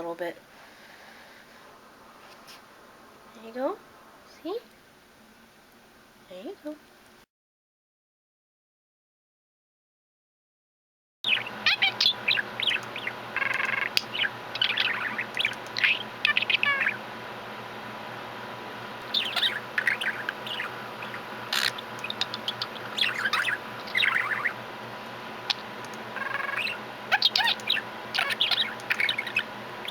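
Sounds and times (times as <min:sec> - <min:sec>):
budgerigar chirping: 0:11.3 - 0:17.0, 0:19.1 - 0:24.6, 0:25.5 - 0:29.9
sharp click: 0:25.5 - 0:26.0.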